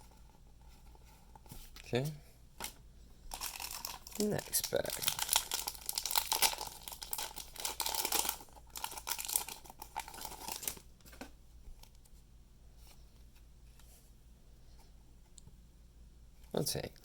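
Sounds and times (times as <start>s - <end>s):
foil wrapper tearing and crinkling: 3.3s - 10.8s.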